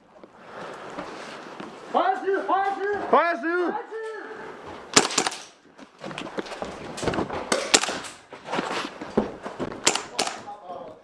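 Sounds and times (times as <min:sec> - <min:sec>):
airsoft gun shots: 0:04.9 - 0:05.5, 0:07.5 - 0:08.1, 0:09.8 - 0:10.5.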